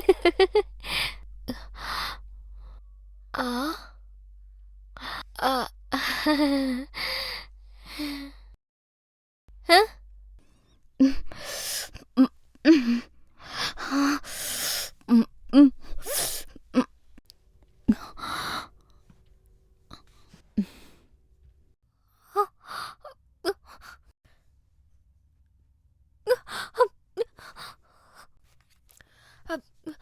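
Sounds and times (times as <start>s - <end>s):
woman laughing and gasping: 0.0s - 1.8s.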